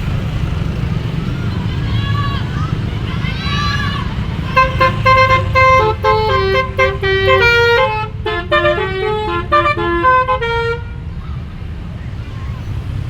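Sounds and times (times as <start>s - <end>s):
low engine rumble: 0.0s - 13.0s
musical horn tune: 4.6s - 11.0s.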